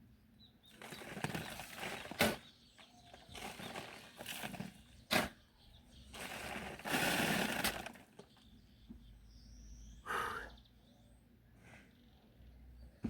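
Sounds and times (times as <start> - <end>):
soil being dug by hand: 0.7 - 5.5, 6.1 - 8.4.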